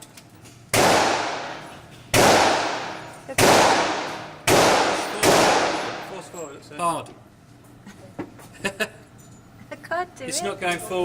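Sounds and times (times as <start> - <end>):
gunshots echoing indoors: 0.7 - 6.2.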